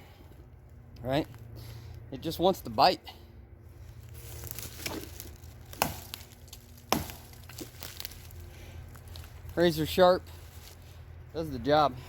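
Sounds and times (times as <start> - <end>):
axe chopping wood: 4.8 - 7.8.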